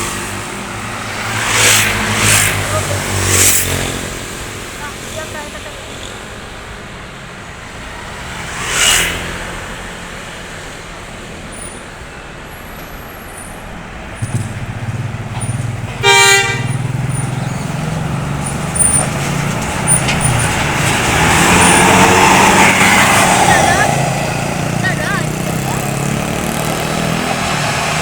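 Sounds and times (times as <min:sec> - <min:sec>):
vehicle rushing past: 0:00.0 - 0:06.9, 0:07.6 - 0:10.8, 0:13.4 - 0:28.0
bus engine rumbling: 0:00.0 - 0:08.6, 0:09.2 - 0:28.0
bus horn toot: 0:15.4 - 0:18.1.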